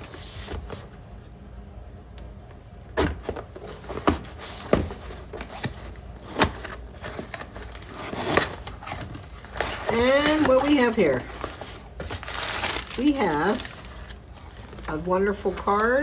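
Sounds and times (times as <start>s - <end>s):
box knocking and crackling: 3.0s - 13.8s
packing material rustling: 3.6s - 16.0s.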